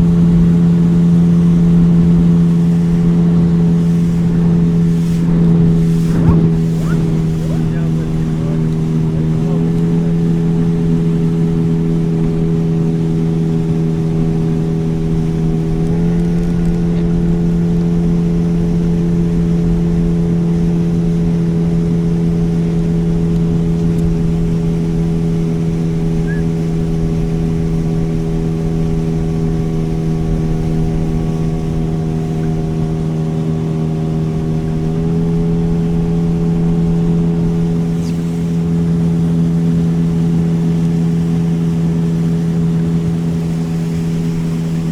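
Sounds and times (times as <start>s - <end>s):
motorboat engine running: 0.0s - 44.9s
water rushing: 0.0s - 44.9s.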